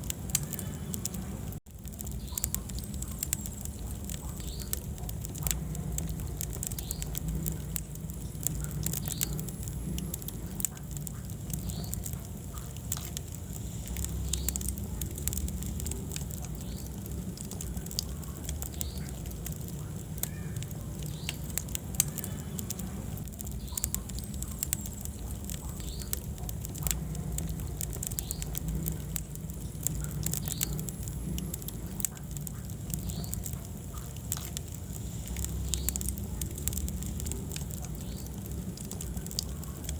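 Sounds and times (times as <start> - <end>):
fire crackling and popping: 0.0 - 39.9
fire rumbling: 0.0 - 39.9.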